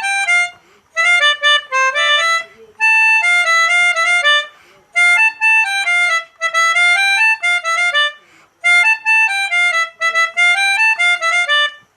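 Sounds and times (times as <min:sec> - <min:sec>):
melodica playing a tune: 0:00.0 - 0:11.9.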